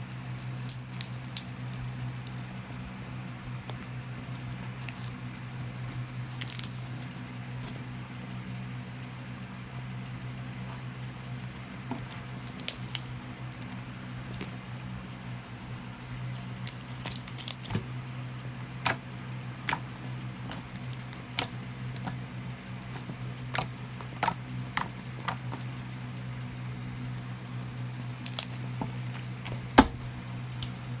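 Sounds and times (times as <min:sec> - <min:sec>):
slime squished by hand: 0:04.7 - 0:08.4, 0:10.0 - 0:26.0, 0:28.2 - 0:30.8.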